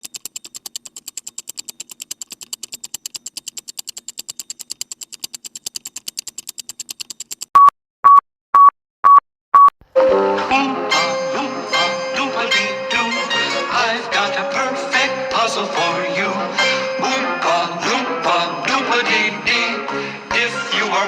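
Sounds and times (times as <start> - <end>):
rapid high clicks: 0.0 - 7.6.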